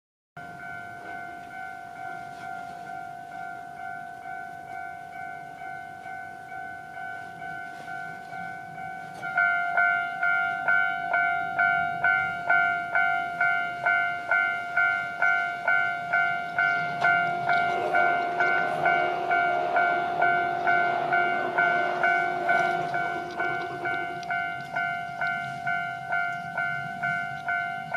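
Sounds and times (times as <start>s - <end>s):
electric train approaching: 0.4s - 27.9s
level crossing bell ringing: 0.4s - 27.9s.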